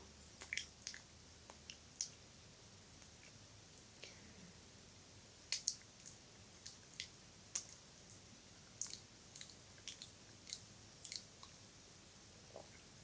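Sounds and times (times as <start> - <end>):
wet lip and tongue clicks: 0.4 - 2.2, 5.5 - 8.2, 8.8 - 11.6.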